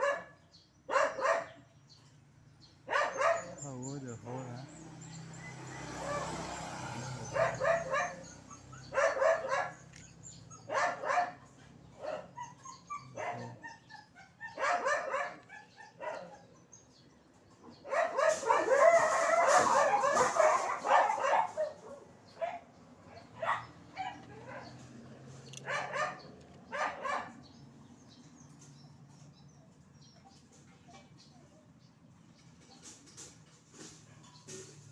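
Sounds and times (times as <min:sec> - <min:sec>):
dog barking and yipping: 0:00.0 - 0:01.6, 0:02.8 - 0:03.6, 0:05.2 - 0:16.8, 0:17.6 - 0:27.6.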